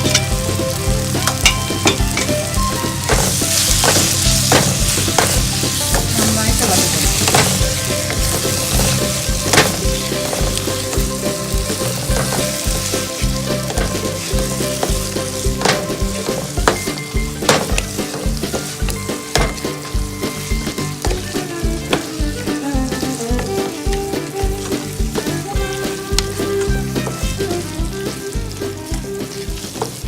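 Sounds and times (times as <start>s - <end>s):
spoon knocking against pan: 0.0s - 22.5s
paste sizzling in a pan: 0.0s - 30.0s.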